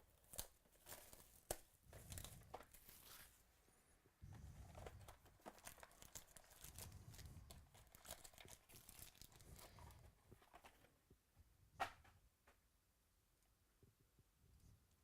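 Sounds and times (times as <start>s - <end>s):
faint wrapper crinkling and tearing: 0.0s - 3.4s, 4.5s - 10.9s.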